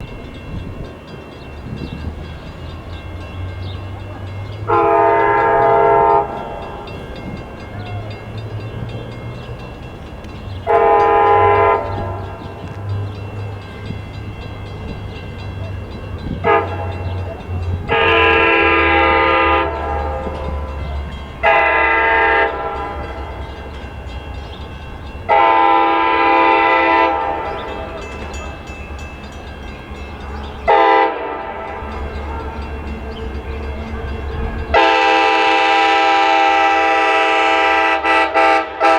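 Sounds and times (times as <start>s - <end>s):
locomotive horn blasts: 4.2s - 9.0s, 10.6s - 13.1s, 16.2s - 23.9s, 25.2s - 28.7s, 29.5s - 38.9s.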